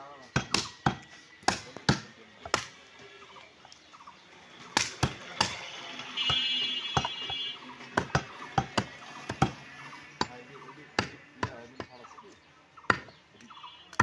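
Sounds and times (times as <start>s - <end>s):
cleaver chopping meat: 0.3s - 2.8s, 4.6s - 5.7s, 7.8s - 12.0s, 12.8s - 13.2s.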